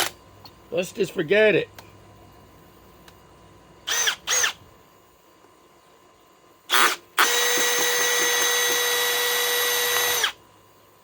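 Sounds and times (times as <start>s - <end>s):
cordless drill motor: 3.8s - 4.6s, 6.7s - 10.4s.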